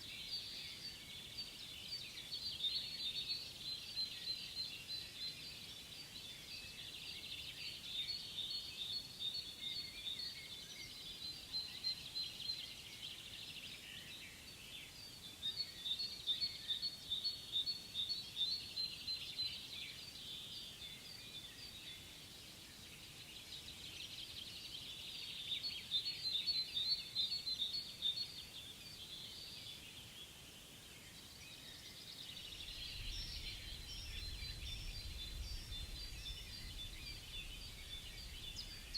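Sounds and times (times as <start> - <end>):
small birds chirping and trilling: 0.0 - 38.9
faint bird twittering: 31.2 - 38.9.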